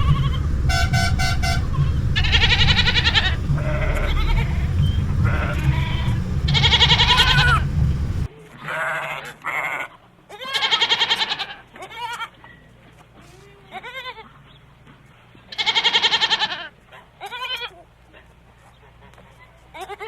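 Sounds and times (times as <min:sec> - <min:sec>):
goats bleating: 0:00.0 - 0:08.3
low rumble: 0:00.0 - 0:08.3
short steady tones: 0:00.0 - 0:08.3.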